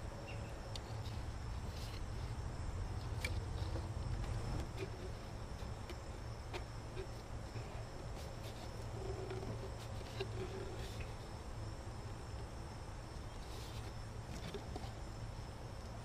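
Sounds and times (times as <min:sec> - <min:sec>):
insect trill: 0:00.0 - 0:16.0.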